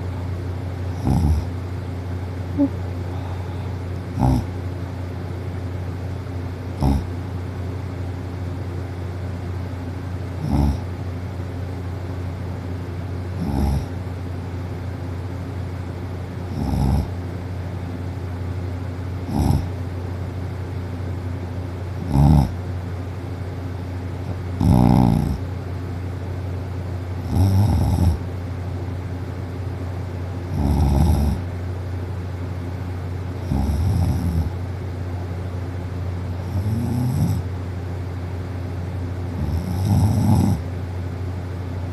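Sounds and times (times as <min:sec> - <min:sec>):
girl snoring: 0:01.0 - 0:01.5, 0:02.6 - 0:04.5, 0:06.8 - 0:07.1, 0:10.4 - 0:10.8, 0:13.4 - 0:14.0, 0:16.6 - 0:17.1, 0:19.3 - 0:19.7, 0:22.0 - 0:22.6, 0:24.6 - 0:25.4, 0:27.3 - 0:28.2, 0:30.6 - 0:31.5, 0:33.4 - 0:34.6, 0:36.4 - 0:37.4, 0:39.4 - 0:40.6.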